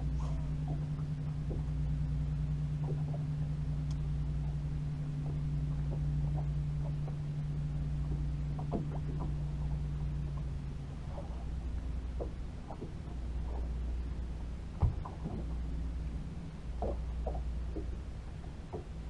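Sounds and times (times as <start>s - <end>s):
boat motor humming: 0.0s - 19.0s
faint short ticks: 3.8s - 4.0s.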